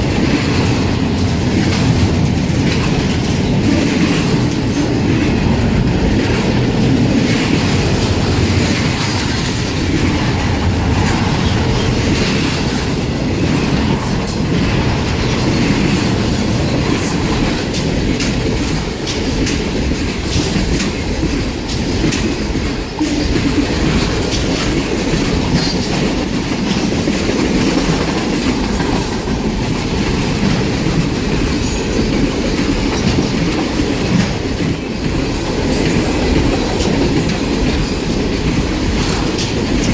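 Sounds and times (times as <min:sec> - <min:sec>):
freight train rumble: 0:00.0 - 0:39.9
wheels clicking over rail joints: 0:00.0 - 0:39.9
train wheel squeal: 0:21.7 - 0:26.1, 0:31.4 - 0:34.3.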